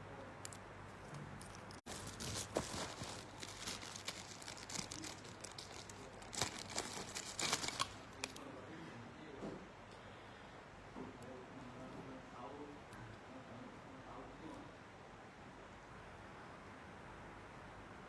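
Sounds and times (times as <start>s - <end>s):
plastic packaging crinkling: 1.4s - 8.4s.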